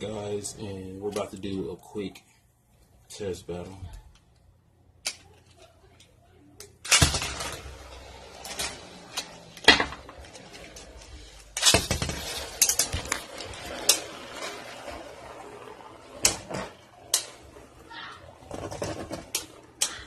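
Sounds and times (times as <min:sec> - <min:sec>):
spinning tops whirring: 0:06.9 - 0:20.0.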